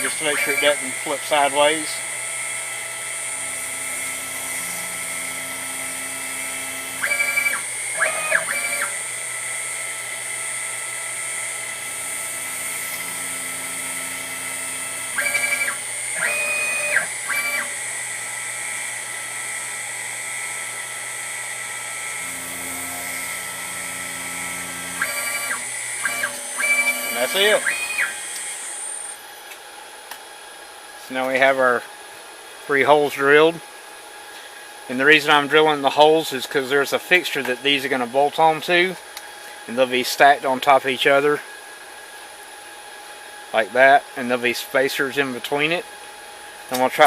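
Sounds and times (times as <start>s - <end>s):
drill bit plunging into part: 0.0s - 9.7s, 10.3s - 29.2s
router spindle whining: 0.0s - 29.3s
stepper motors humming: 0.0s - 29.3s.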